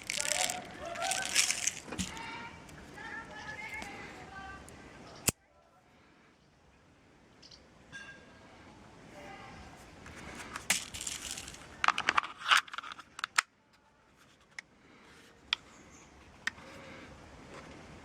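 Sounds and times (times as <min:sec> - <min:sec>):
air pistol metal clicks and rattles: 0:00.0 - 0:02.3, 0:10.5 - 0:13.5.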